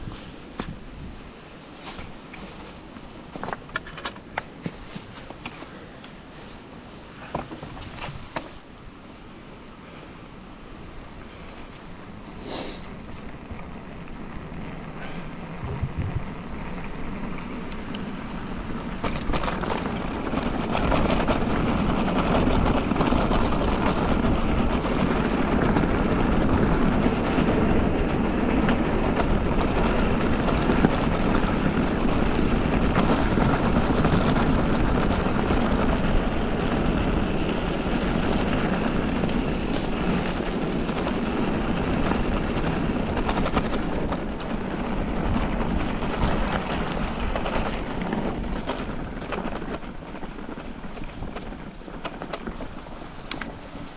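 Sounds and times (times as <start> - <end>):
tyre and wind noise: 0.0 - 53.9
bike rattling and knocking: 1.8 - 6.0, 7.2 - 8.6, 12.9 - 53.9.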